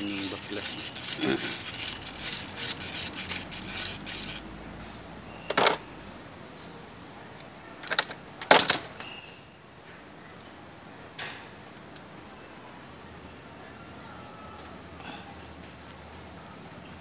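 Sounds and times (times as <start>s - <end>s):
metal tools clinking and rattling: 0.0s - 4.5s, 7.8s - 9.2s.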